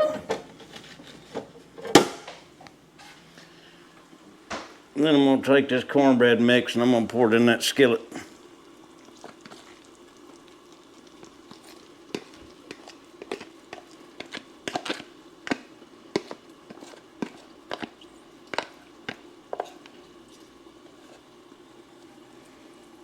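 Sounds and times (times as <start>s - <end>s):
faint steady hum: 0.0s - 23.0s
batter crackling and popping in butter: 8.1s - 21.7s.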